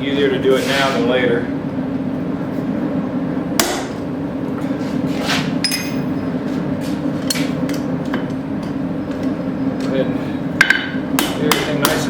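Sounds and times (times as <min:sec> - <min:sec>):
metal clinks: 0:05.6 - 0:06.2.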